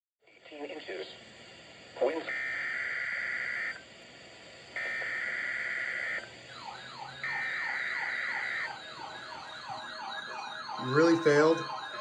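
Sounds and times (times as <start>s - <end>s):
alert radio falling siren sweep: 2.2s - 3.8s, 4.8s - 12.0s
buzzy digital data bursts: 10.8s - 12.0s.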